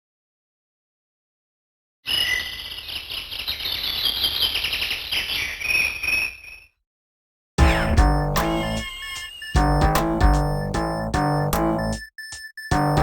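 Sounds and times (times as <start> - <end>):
chirping trilling ringtone: 2.1 - 6.8, 7.6 - 13.0.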